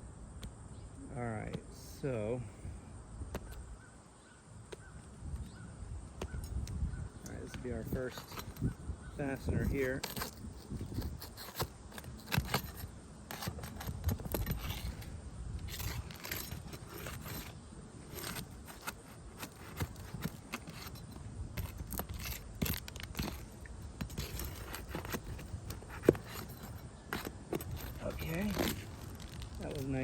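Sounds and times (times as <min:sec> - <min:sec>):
scraping: 0:07.3 - 0:30.0
nails being pried out: 0:07.8 - 0:08.8, 0:09.4 - 0:30.0.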